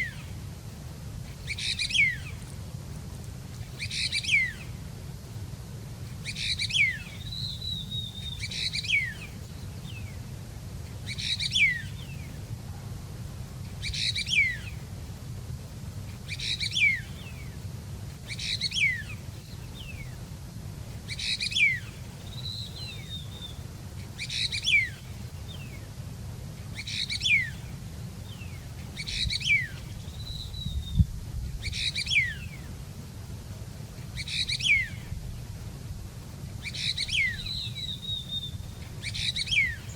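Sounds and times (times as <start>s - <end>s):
soft warbling bird trill: 1.3s - 2.5s, 3.7s - 4.8s, 6.1s - 10.2s, 11.0s - 12.5s, 13.8s - 14.9s, 16.2s - 17.6s, 18.2s - 20.2s, 21.0s - 25.8s, 26.7s - 32.8s, 34.0s - 35.2s, 36.6s - 39.9s.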